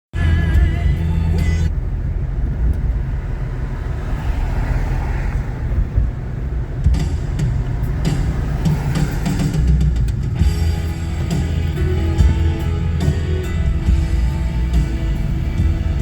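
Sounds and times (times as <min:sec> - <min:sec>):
car engine and tyre noise: 0:00.1 - 0:16.0
music: 0:00.2 - 0:01.7, 0:06.9 - 0:16.0.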